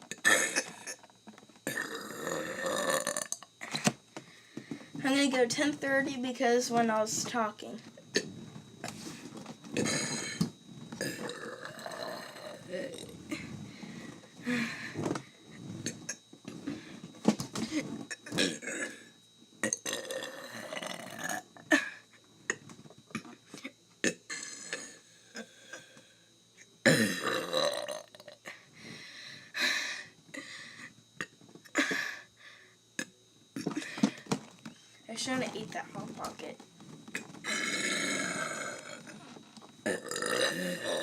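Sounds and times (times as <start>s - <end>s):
person burping: 0.1s - 3.8s, 9.8s - 13.5s, 18.1s - 23.4s, 24.0s - 26.0s, 26.8s - 28.4s, 37.1s - 39.2s, 39.8s - 41.0s.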